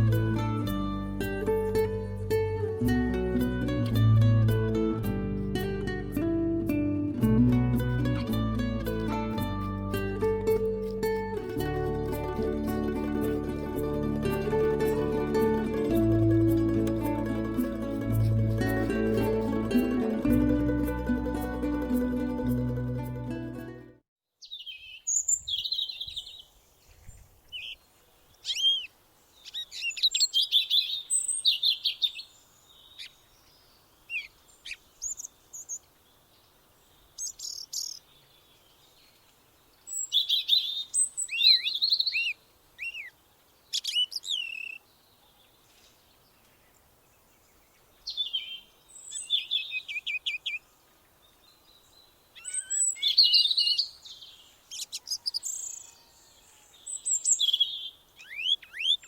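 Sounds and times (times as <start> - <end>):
songbirds chirping and trilling: 24.4 - 59.0.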